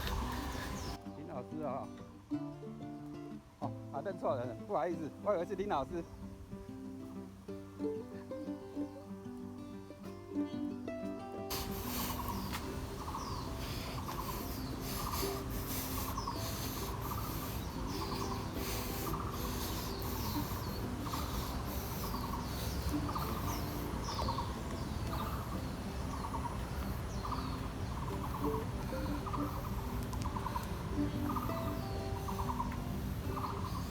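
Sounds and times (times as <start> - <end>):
birds chirping: 0.0 - 2.1, 11.5 - 33.9
bird trilled call: 11.5 - 33.9.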